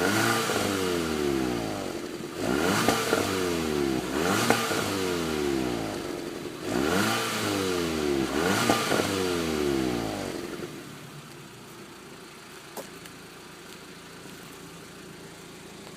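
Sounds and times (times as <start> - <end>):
car engine revving: 0.0 - 11.1
exhaust crack: 0.0 - 15.9
car engine idling: 0.8 - 15.9.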